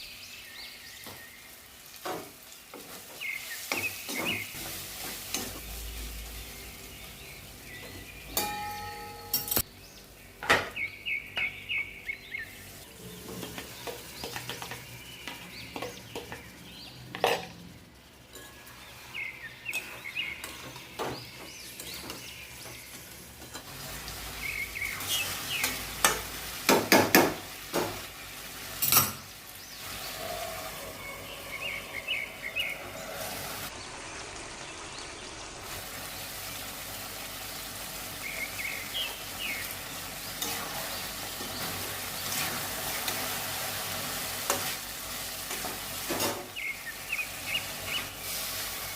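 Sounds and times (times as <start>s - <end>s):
faint birds chirping: 0.0s - 26.4s, 27.4s - 48.9s
food frying in a pan: 0.0s - 48.9s.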